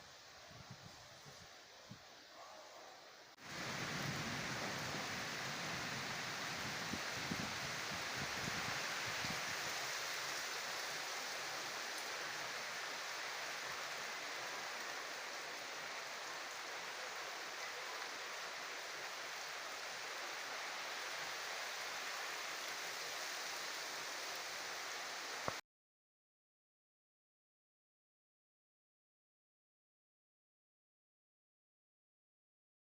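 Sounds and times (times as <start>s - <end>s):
steady rain: 0.0s - 25.6s.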